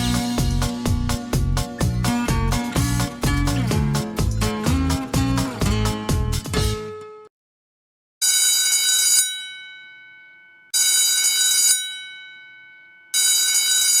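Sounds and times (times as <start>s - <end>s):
bell-like ringing: 8.6s - 14.0s.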